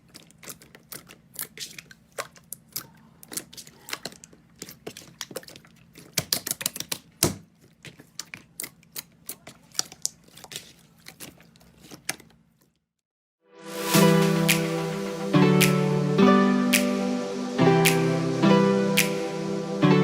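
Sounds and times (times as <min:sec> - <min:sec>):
slime squishing and crackling: 0:00.0 - 0:12.6.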